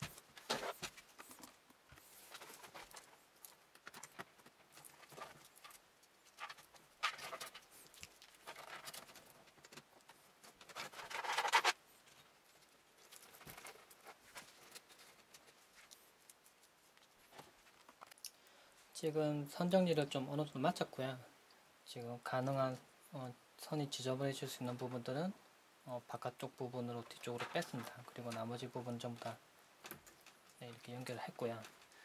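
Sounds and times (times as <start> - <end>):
cables scraping and rustling: 0.0 - 18.4, 26.2 - 32.0.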